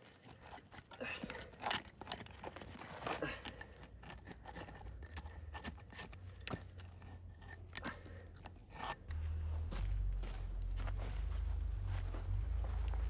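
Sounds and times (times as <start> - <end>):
metal tool scraping and clicking: 0.0 - 2.9, 3.5 - 9.1
low rumble: 9.1 - 13.0.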